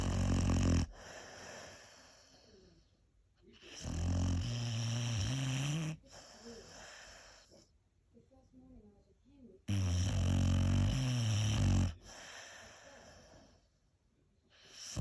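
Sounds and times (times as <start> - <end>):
dog snoring: 0.0 - 2.6, 3.6 - 7.7, 9.7 - 13.7, 14.6 - 15.0.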